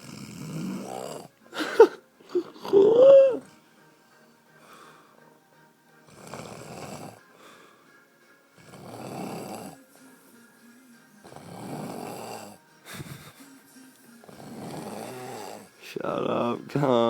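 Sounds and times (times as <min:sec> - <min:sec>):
man snoring heavily: 0:00.0 - 0:03.6, 0:06.0 - 0:07.8, 0:08.6 - 0:09.9, 0:11.2 - 0:13.4, 0:14.2 - 0:17.0.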